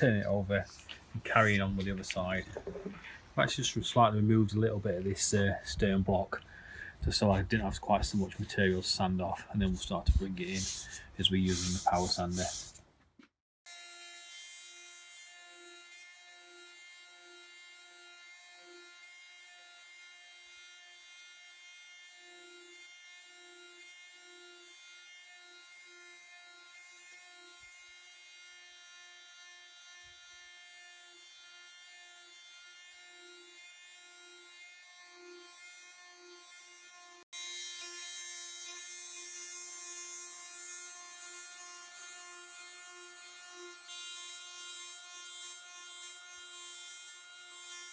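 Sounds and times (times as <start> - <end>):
sander pad rubbing wood: 7.0 - 12.8.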